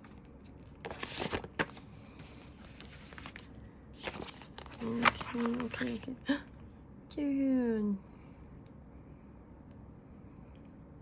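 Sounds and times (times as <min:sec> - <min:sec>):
packaging rustling and crinkling: 0:00.4 - 0:06.2.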